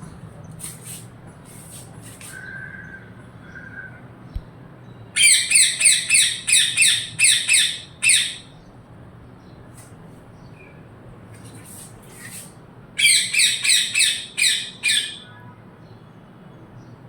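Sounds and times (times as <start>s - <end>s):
faint bird chirps: 2.2s - 8.5s
parrot squawking: 5.2s - 8.5s, 13.0s - 15.4s.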